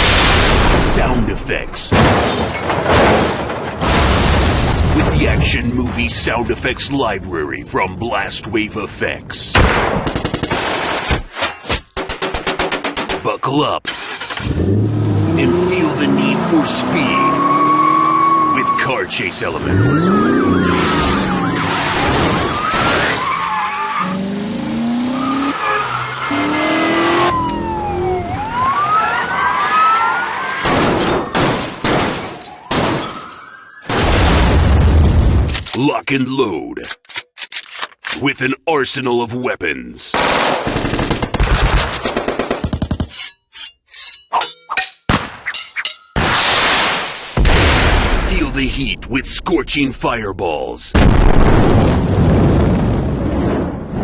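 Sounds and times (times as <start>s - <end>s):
automatic gunfire: 9.7s - 11.1s, 40.2s - 42.7s
car engines revving hard: 14.3s - 22.4s, 23.9s - 30.6s
tyres squealing and skidding: 15.4s - 31.4s.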